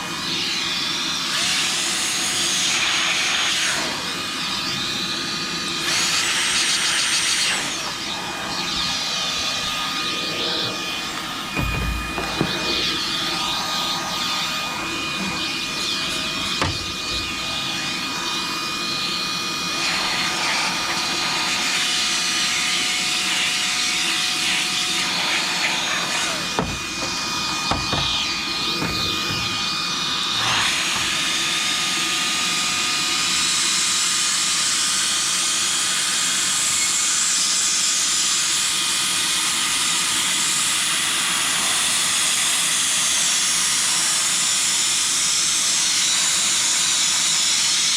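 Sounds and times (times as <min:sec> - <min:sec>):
blower motor whining: 0:00.0 - 0:33.8.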